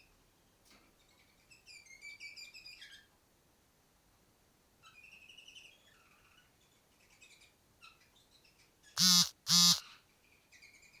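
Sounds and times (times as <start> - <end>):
canary chirping: 1.0 - 3.1, 4.8 - 11.0
harsh buzzy bird calls: 8.9 - 10.0.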